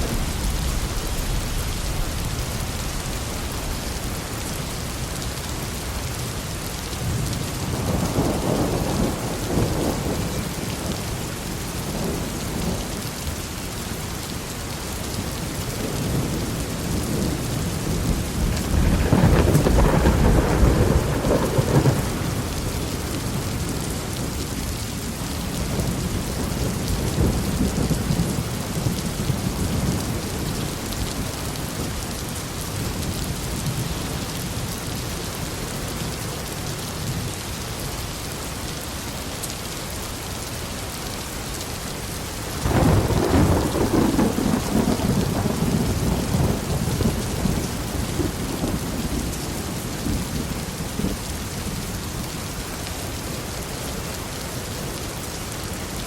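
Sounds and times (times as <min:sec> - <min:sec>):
rolling thunder: 0:00.0 - 0:04.4, 0:16.0 - 0:23.8, 0:42.6 - 0:51.3
heavy rain: 0:00.0 - 0:56.0.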